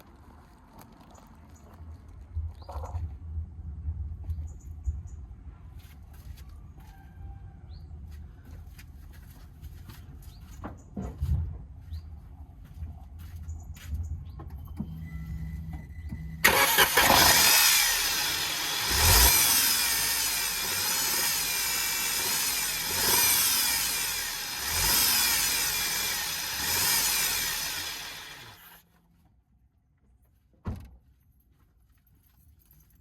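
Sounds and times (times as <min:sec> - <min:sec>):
car engine revving: 0:16.4 - 0:28.7.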